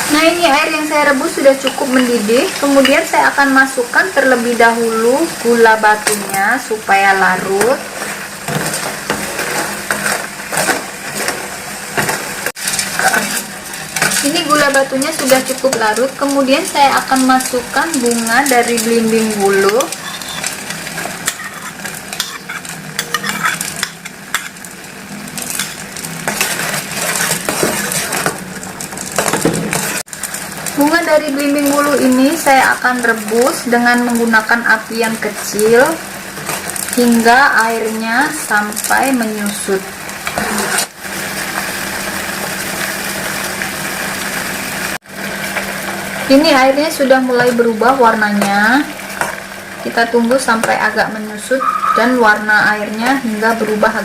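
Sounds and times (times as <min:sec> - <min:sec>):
pot simmering with sizzling bubbles: 0:00.0 - 0:54.0
spoon scraping a pan: 0:07.5 - 0:24.6, 0:25.5 - 0:28.4.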